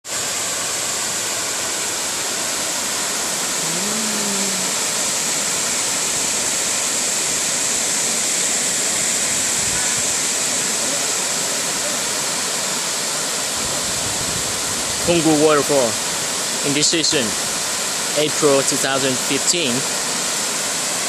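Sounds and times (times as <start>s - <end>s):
waterfall rushing: 0.1s - 21.0s.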